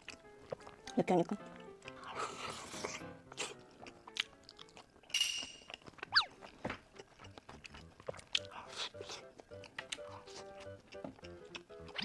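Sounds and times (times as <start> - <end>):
faint background music: 0.0 - 12.0
eating mouth sounds: 1.8 - 5.1, 5.7 - 12.0
utensils clinking: 5.1 - 5.8.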